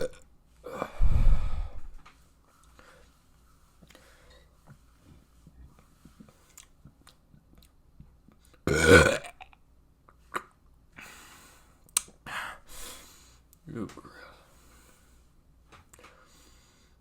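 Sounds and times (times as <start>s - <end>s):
person burping: 0.0s - 0.2s, 8.7s - 9.5s.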